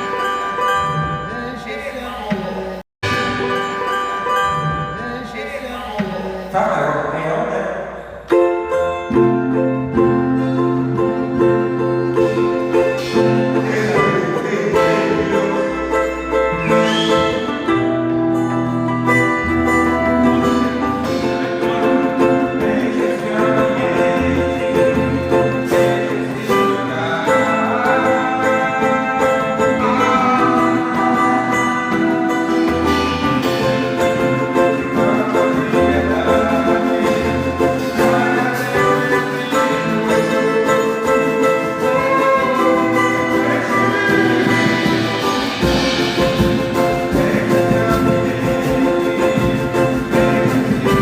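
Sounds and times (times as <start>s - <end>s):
held string notes: 0.0s - 51.0s
plucked guitar or banjo: 0.0s - 51.0s
sustained bass line: 9.1s - 51.0s.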